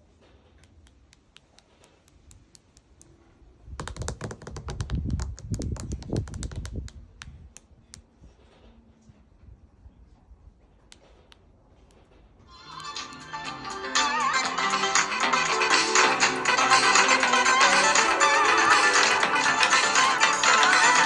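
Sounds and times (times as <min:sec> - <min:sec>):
small sharp clicks and taps: 0:03.8 - 0:08.0.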